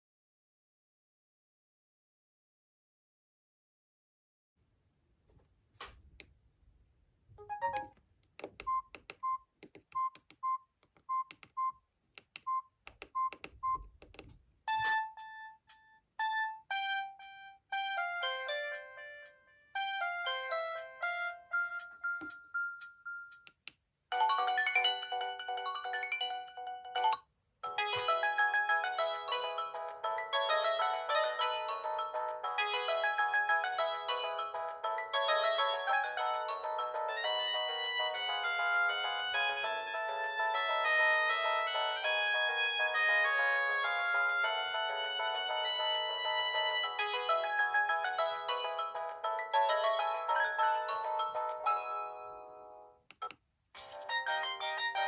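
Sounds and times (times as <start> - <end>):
single-note ringtone melody: 7.4 - 7.9, 24.1 - 52.9
phone keypad clicks: 7.5 - 15.0, 53.1 - 53.4
many-voiced ringtone: 14.7 - 23.5, 24.1 - 52.8, 53.8 - 55.0.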